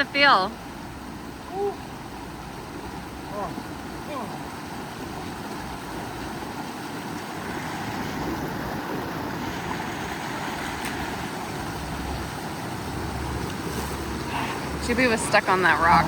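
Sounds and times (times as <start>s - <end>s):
water rushing over rocks: 0.0s - 16.0s.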